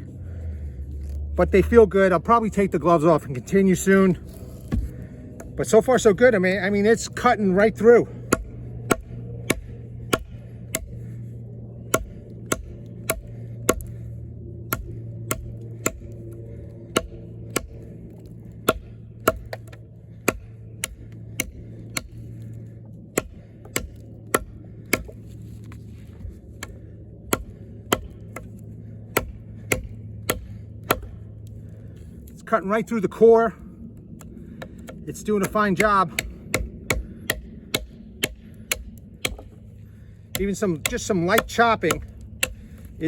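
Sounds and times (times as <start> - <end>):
knife chopping wood: 4.3 - 5.8, 7.9 - 11.1, 11.8 - 31.6, 34.2 - 42.9.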